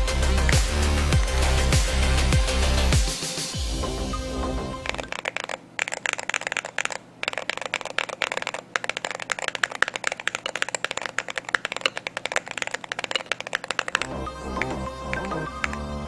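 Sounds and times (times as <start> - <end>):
keyboard key clicks: 4.9 - 16.0.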